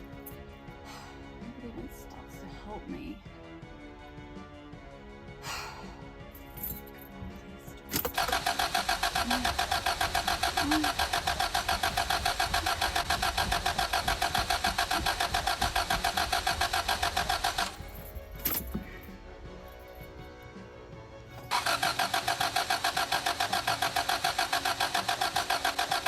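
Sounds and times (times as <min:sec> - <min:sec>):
car engine cranking: 0:06.6 - 0:19.1, 0:21.4 - 0:26.0.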